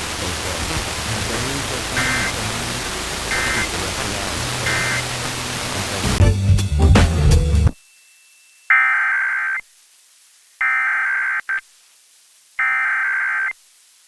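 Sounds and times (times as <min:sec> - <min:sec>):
steady hiss: 0:00.0 - 0:08.8, 0:09.6 - 0:14.0
loud music: 0:01.0 - 0:07.8
digital data tones: 0:01.1 - 0:06.1, 0:07.8 - 0:09.6, 0:12.6 - 0:13.6.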